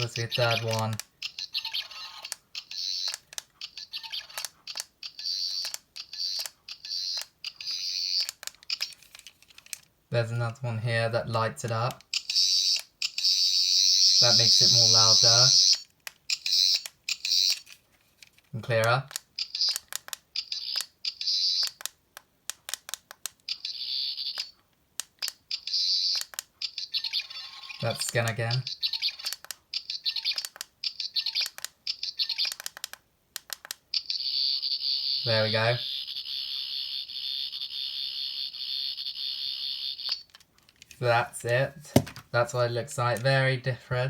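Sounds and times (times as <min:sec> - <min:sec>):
toy button clicks: 0:00.5 - 0:09.0, 0:19.1 - 0:23.7, 0:28.0 - 0:34.1.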